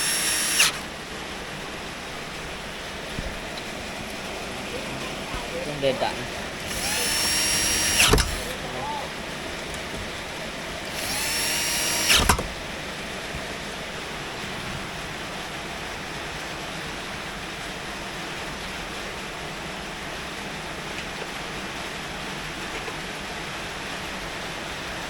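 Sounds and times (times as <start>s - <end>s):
sharp clicks: 0.0s - 0.9s, 6.6s - 8.6s, 10.9s - 12.7s
power drill whining: 0.0s - 1.0s, 6.3s - 12.8s.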